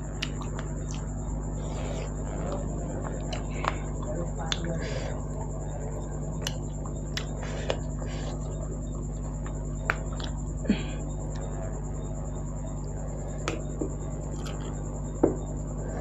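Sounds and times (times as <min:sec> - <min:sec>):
crunchy chewing: 0:00.0 - 0:16.0
electrical hum: 0:00.0 - 0:16.0
mouth clicks and smacks: 0:06.4 - 0:08.6, 0:09.2 - 0:10.4.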